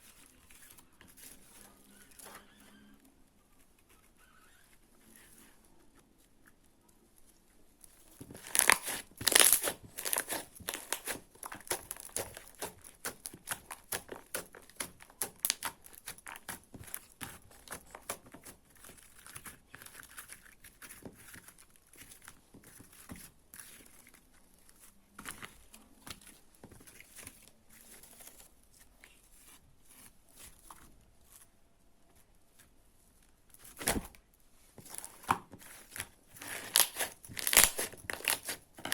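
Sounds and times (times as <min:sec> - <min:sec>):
slime crackling and popping: 0:08.2 - 0:18.2, 0:34.8 - 0:38.9.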